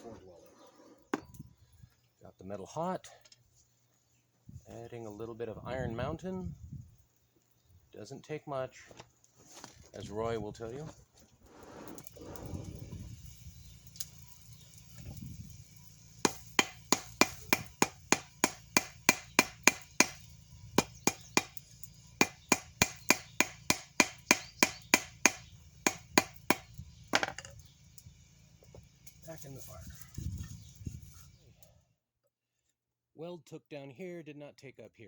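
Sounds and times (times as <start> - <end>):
hammer striking steel on anvil: 16.2 - 21.6, 22.2 - 26.7.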